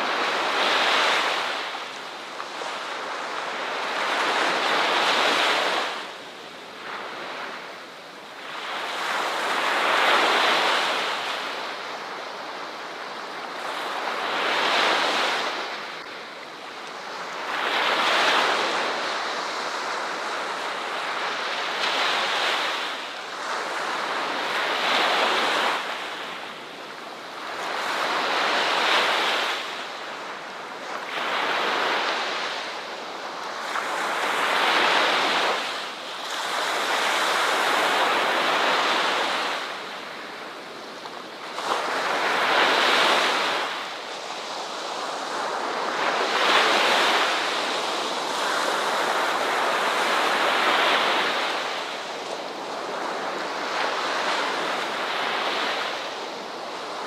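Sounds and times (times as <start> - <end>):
ocean waves breaking on shore: 0.0 - 57.0.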